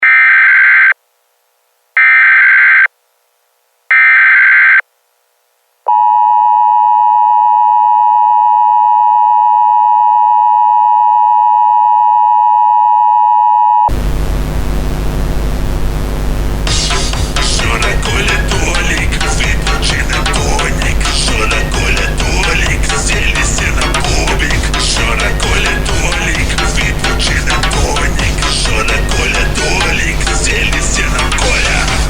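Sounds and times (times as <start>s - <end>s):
loud harsh noise: 13.9s - 32.0s.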